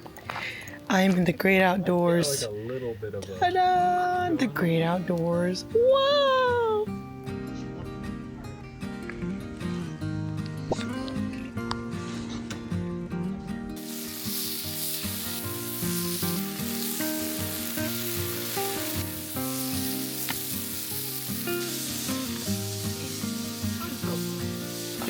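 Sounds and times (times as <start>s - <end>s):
background music: 0.0s - 25.0s
food sizzling in a hot pan: 13.8s - 25.0s.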